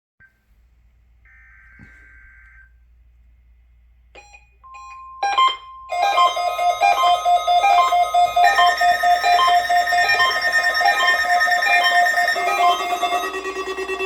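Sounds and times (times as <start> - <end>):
music with plucked notes: 5.0 - 14.0.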